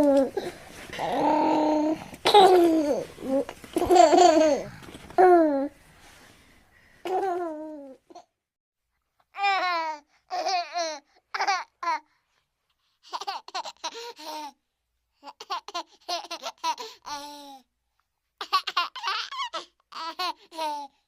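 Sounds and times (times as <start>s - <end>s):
baby laughing and babbling: 0.0s - 5.7s, 7.1s - 8.3s, 9.4s - 12.1s, 13.1s - 14.6s, 18.4s - 21.0s.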